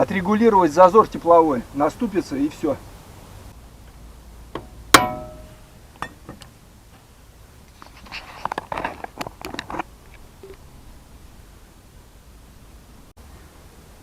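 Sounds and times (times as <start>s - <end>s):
metal tool ringing clang: 5.0s - 6.3s.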